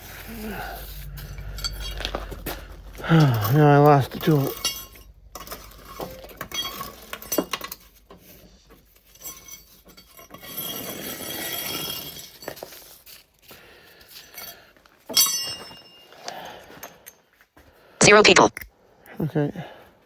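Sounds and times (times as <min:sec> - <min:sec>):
metal tools clinking: 0:00.8 - 0:13.5, 0:14.1 - 0:17.3
rummaging and scraping: 0:01.0 - 0:17.0.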